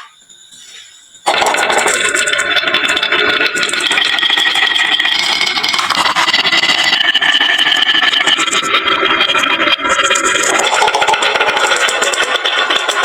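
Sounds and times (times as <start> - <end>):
high ringing wheel whir: 0.0 - 5.6.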